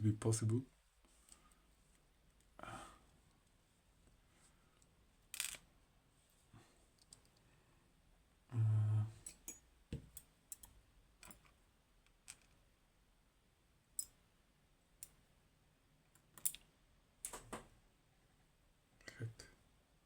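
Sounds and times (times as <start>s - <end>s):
small metal parts clicking: 5.3s - 5.6s, 10.2s - 12.6s, 16.2s - 16.7s.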